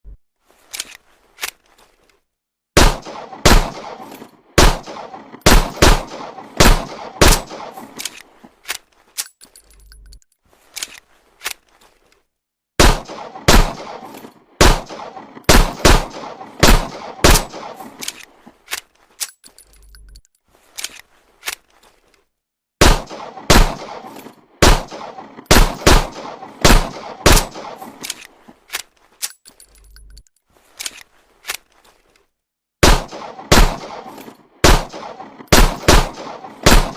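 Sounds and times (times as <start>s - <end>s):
pistol shots with ringing tails: 2.8s - 8.0s, 12.8s - 18.0s, 22.8s - 28.0s, 32.8s - 36.9s.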